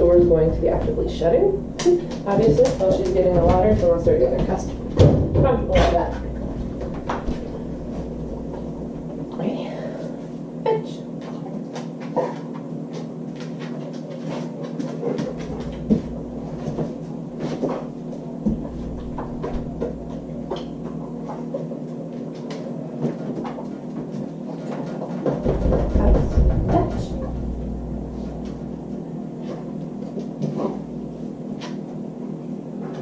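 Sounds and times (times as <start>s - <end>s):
steady low hum: 0.0s - 33.0s
refrigerator door knocks and rattles: 2.4s - 6.2s, 25.4s - 27.6s.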